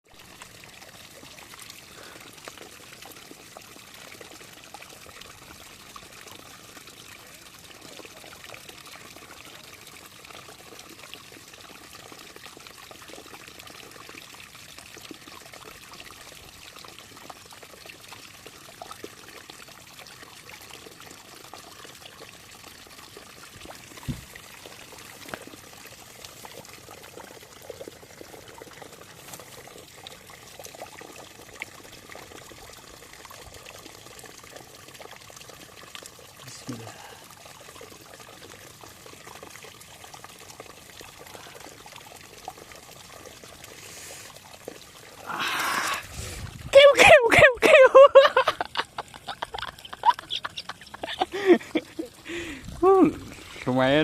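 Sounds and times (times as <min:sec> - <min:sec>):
water trickling and splashing: 0:00.0 - 0:54.0
low thump: 0:24.0 - 0:24.4.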